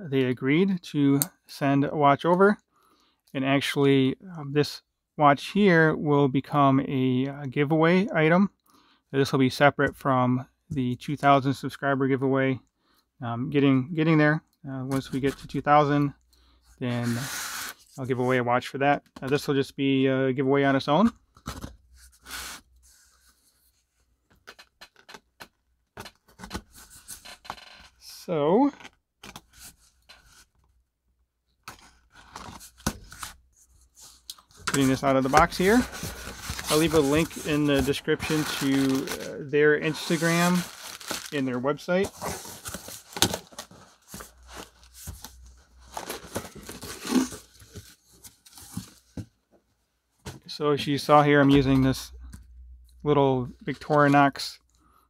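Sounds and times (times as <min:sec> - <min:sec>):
rustling scrape: 0:33.6 - 0:49.1
package being handled and opened: 0:34.0 - 0:49.3
cardboard tearing and crinkling: 0:34.8 - 0:48.8.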